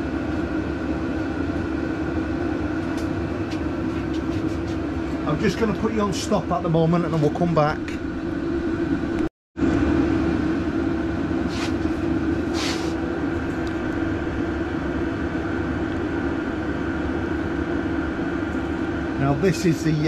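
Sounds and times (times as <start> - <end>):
mechanical background hum: 0.0 - 20.0.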